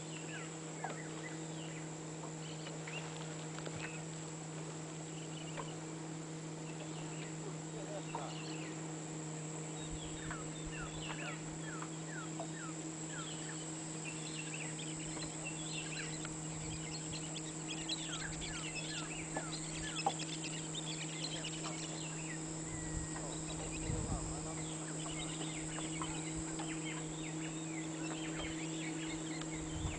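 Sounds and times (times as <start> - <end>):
birds chirping: 0.0 - 29.9
high insect drone: 0.0 - 29.9
steady low hum: 0.0 - 29.9
chorus of bird calls: 6.6 - 8.9, 9.7 - 29.9.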